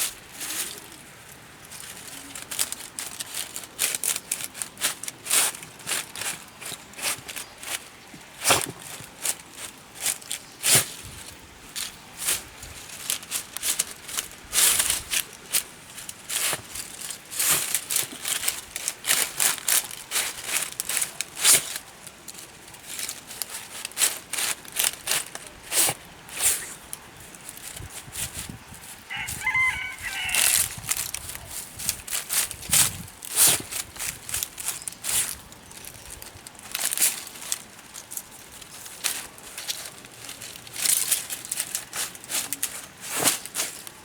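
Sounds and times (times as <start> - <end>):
dog rustling dry plant debris: 0.0 - 44.0.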